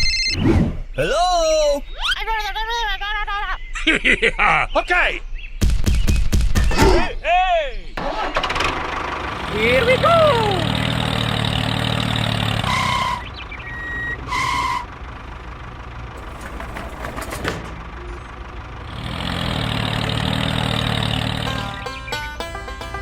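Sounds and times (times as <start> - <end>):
short electronic beeps: 0.0 - 0.4
heavy vehicle engine idling: 8.0 - 23.0.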